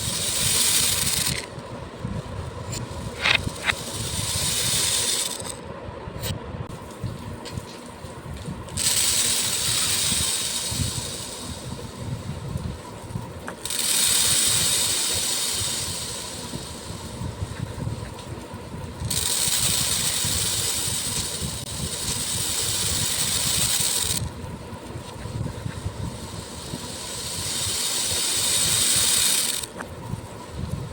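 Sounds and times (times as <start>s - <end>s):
small beads being poured: 0.0s - 1.5s, 3.0s - 5.6s.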